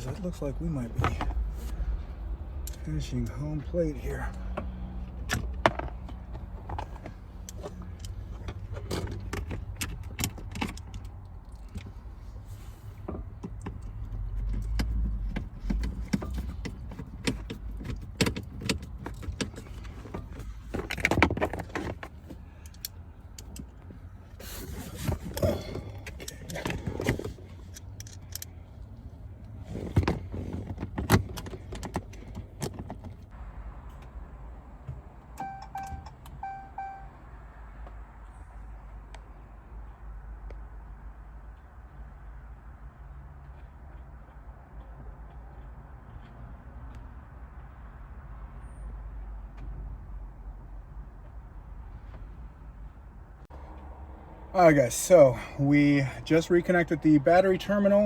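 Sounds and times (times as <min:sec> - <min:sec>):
short beep: 0:35.4 - 0:37.2.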